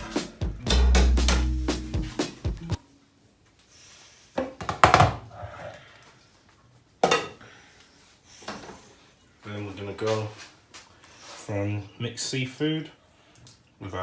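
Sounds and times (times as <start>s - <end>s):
kitchenware clattering: 7.0s - 7.4s.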